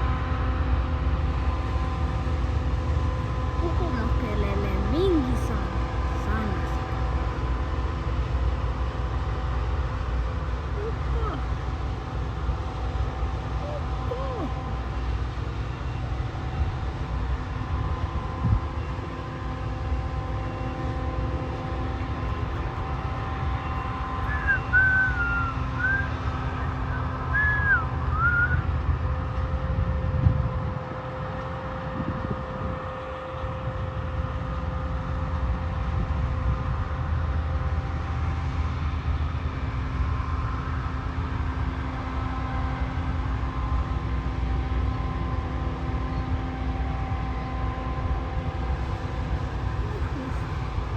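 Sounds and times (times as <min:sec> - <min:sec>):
combine harvester running: 0:00.0 - 0:50.9
whistled notes: 0:24.2 - 0:28.6.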